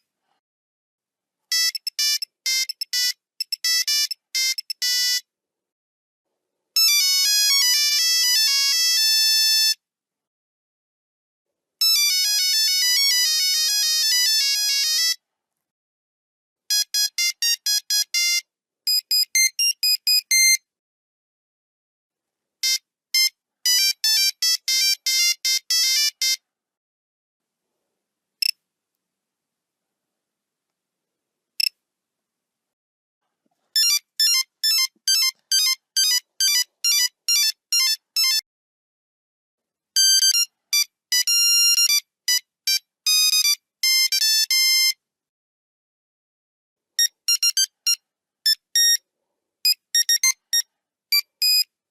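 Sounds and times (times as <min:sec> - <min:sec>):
monophonic phone ringtone beeps: 0:01.5 - 0:05.2, 0:33.8 - 0:38.4, 0:51.2 - 0:51.6.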